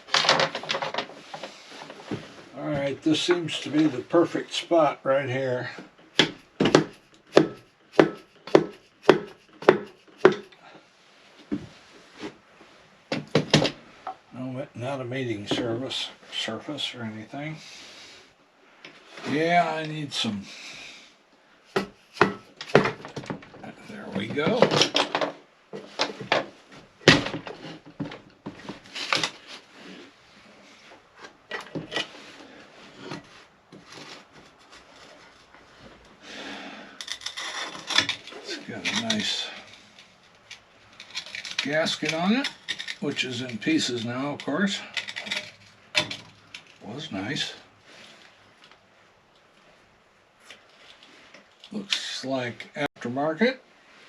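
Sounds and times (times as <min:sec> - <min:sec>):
tool knocking on engine cases: 0:06.2 - 0:10.5.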